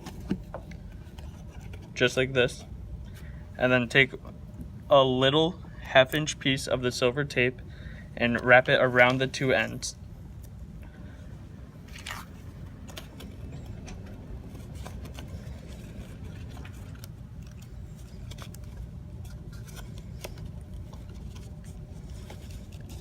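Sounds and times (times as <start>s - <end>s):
steady low hum: 0.0s - 23.0s
foil tape crinkling: 11.9s - 23.0s
small clicks and scrapes: 12.0s - 23.0s.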